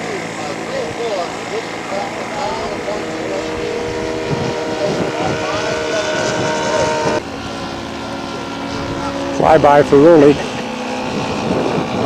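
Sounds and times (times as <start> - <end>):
model airplane engine running: 0.0 - 12.0
wind noise: 2.1 - 12.0.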